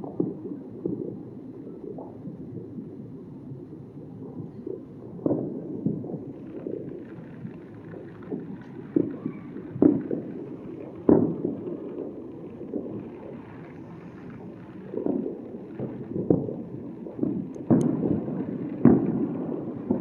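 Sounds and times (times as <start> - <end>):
distant fireworks bangs: 0.0 - 20.0
steady low rumble: 9.7 - 20.0.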